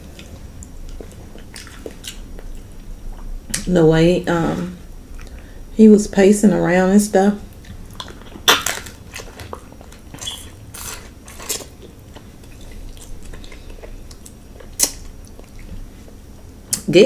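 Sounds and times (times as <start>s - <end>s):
person chewing: 0.0s - 3.6s, 5.1s - 5.5s, 7.5s - 16.8s.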